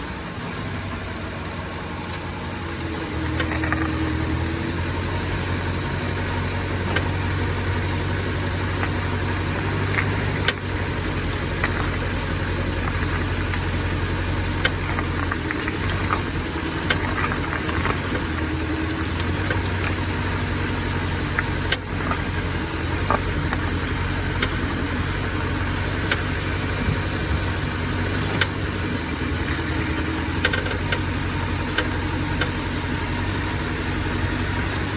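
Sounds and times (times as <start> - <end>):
car engine running: 0.0 - 34.9
brake creaking clicks: 3.0 - 4.5, 6.3 - 32.7.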